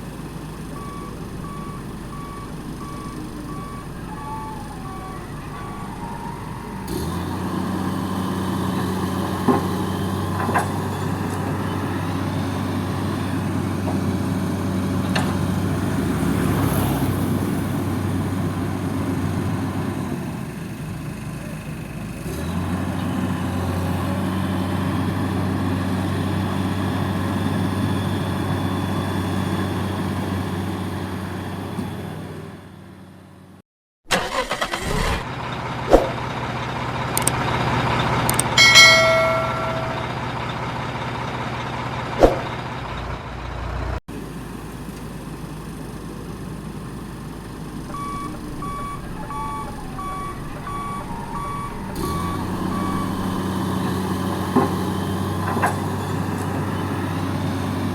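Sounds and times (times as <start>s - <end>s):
heavy diesel engine running: 0.0s - 57.9s
reversing alarm beeping: 0.6s - 7.8s, 38.3s - 40.4s, 47.9s - 54.2s.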